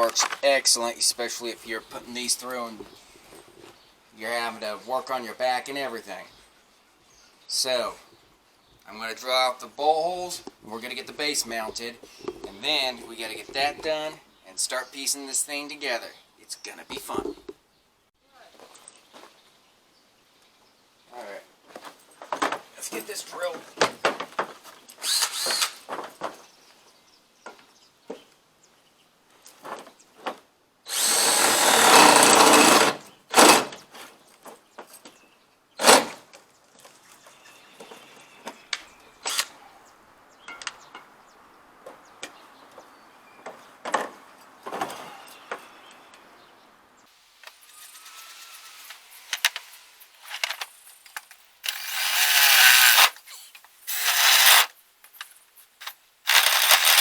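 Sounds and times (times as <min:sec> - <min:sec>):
power drill boring: 0:25.0 - 0:25.8, 0:30.9 - 0:33.7, 0:47.5 - 0:49.7, 0:51.6 - 0:54.7, 0:56.3 - 0:57.0.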